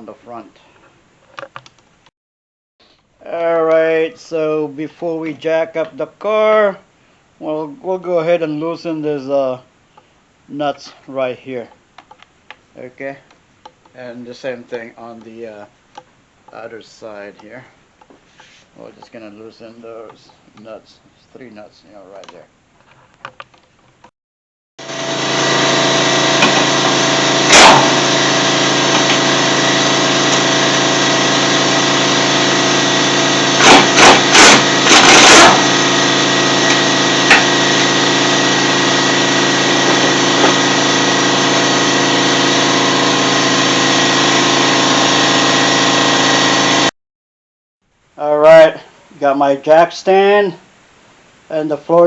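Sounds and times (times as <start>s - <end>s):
motor humming: 24.8s - 46.9s.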